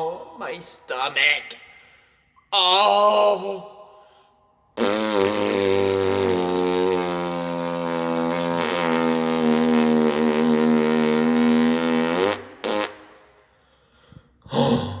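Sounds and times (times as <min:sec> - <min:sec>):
buzzing fart noise: 0:04.8 - 0:13.3.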